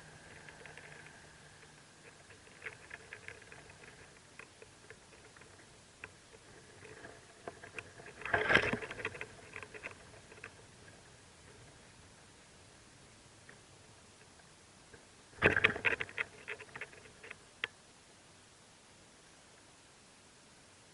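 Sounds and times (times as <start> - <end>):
scratching and tapping in nest: 0.0 - 11.8, 14.9 - 17.8.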